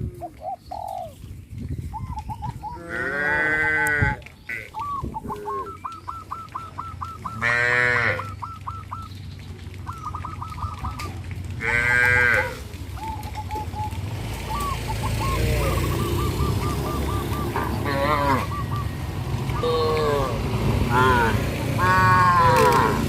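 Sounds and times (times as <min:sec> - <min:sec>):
cattle mooing: 0:02.8 - 0:04.7, 0:07.4 - 0:08.3, 0:11.6 - 0:12.6, 0:17.6 - 0:18.5, 0:19.6 - 0:23.0.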